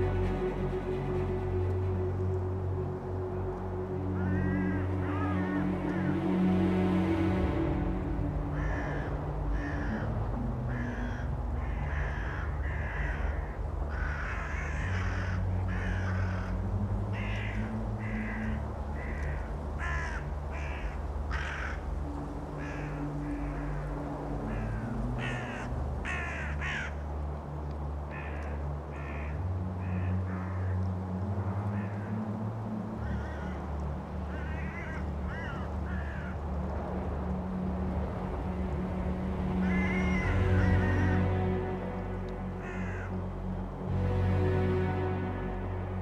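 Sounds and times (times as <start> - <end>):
steady low drone: 0.0 - 46.0
crows cawing: 4.0 - 6.5, 8.6 - 23.8, 24.4 - 27.0, 28.1 - 30.8, 33.0 - 36.4, 39.6 - 43.2.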